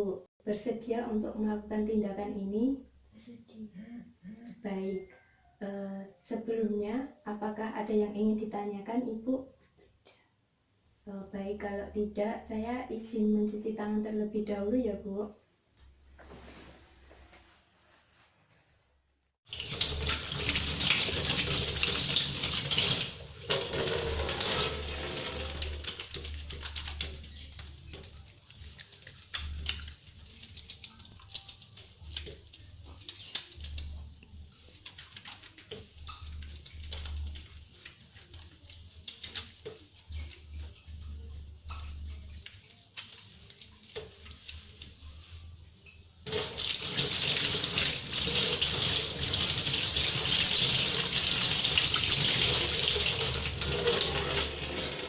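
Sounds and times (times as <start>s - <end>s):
water splashes: 19.5s - 40.3s, 46.3s - 55.0s
tap water running at a sink: 19.5s - 40.8s, 46.2s - 55.0s.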